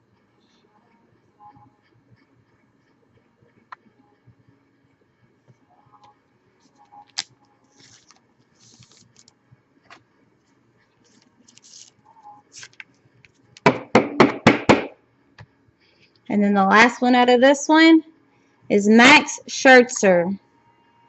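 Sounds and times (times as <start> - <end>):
card packaging rustling: 7.1 - 9.3, 11.1 - 12.8.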